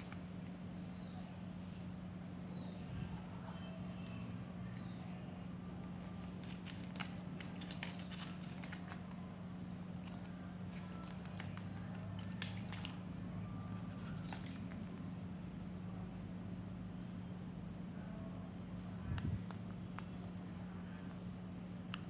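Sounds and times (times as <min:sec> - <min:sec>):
plastic parts clicking: 0:06.2 - 0:09.2, 0:10.0 - 0:13.0.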